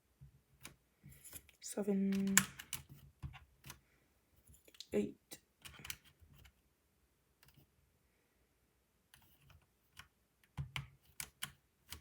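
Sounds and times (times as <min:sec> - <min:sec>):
keyboard keycaps clacking: 0:02.1 - 0:03.8.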